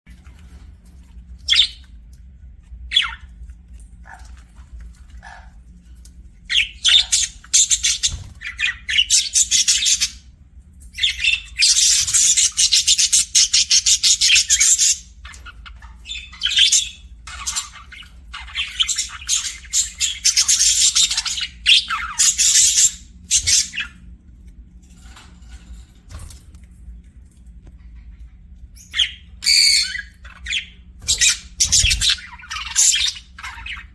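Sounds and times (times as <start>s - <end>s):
budgerigar chirping and warbling: 6.5s - 10.2s, 28.8s - 33.9s.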